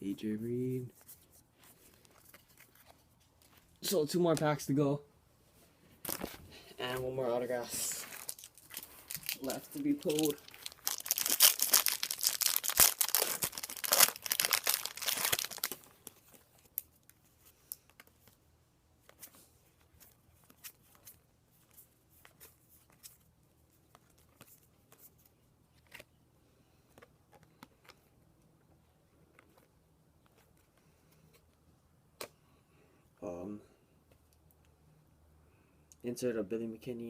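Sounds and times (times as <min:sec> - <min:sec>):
wrapper tearing and crinkling: 0:07.9 - 0:16.1
cards clicking and rustling: 0:08.0 - 0:16.9.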